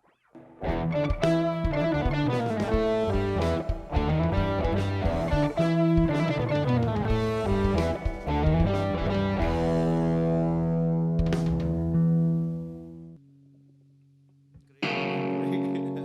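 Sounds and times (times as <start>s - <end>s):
electric guitar picked and strummed: 0.1s - 13.6s, 14.8s - 16.0s
band playing live: 0.6s - 12.5s.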